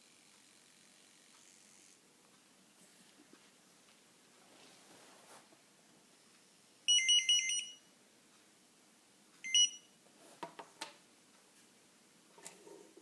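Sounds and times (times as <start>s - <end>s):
barcode scanner electronic buzz: 9.5s - 9.9s.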